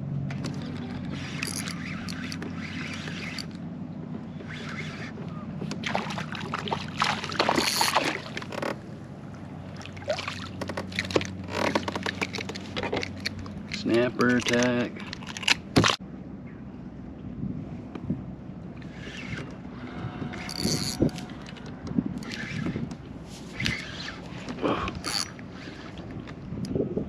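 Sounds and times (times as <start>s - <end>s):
electric trolling motor humming: 0.2s - 13.8s, 18.7s - 26.6s
splashing and clatter: 4.4s - 8.8s, 9.7s - 16.0s.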